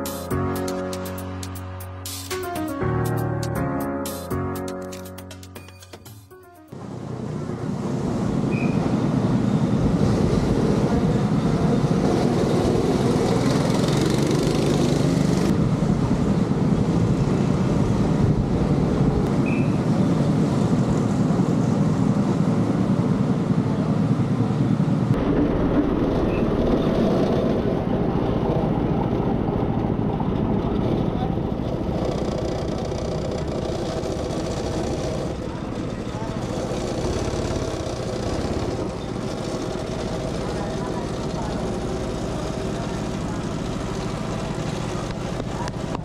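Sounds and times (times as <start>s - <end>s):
wind noise: 7.9s - 13.4s
go-kart engines rumbling: 8.5s - 46.0s.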